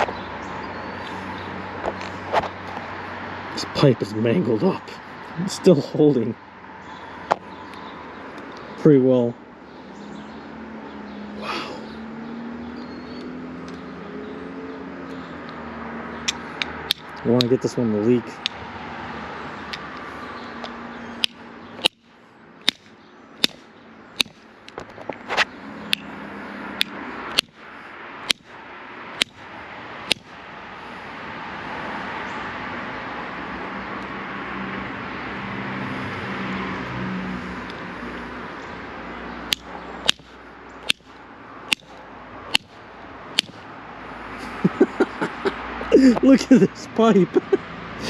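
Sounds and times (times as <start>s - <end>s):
pliers striking metal pipe: 24.2s - 24.4s, 30.1s - 30.3s, 39.5s - 41.0s, 42.5s - 42.7s, 43.4s - 43.6s.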